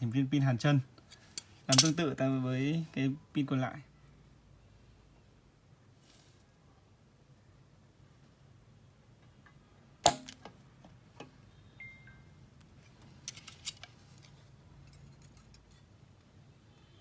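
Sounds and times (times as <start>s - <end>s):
sharp snap: 10.0s - 10.4s.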